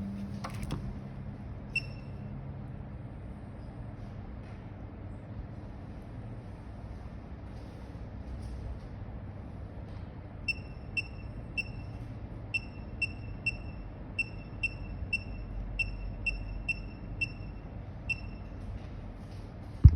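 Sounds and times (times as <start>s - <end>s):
steady low hum: 0.0s - 19.9s
high-pitched electronic beeps: 12.6s - 18.4s.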